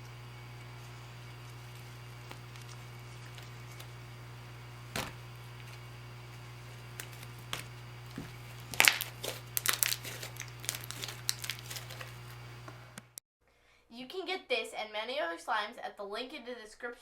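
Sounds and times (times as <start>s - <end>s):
steady low hum: 0.0s - 13.2s
sticky slime clicks and crackles: 8.7s - 12.1s.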